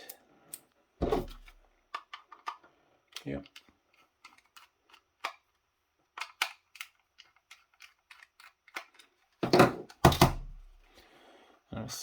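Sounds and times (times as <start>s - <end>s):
plastic housing being handled: 1.0s - 5.5s.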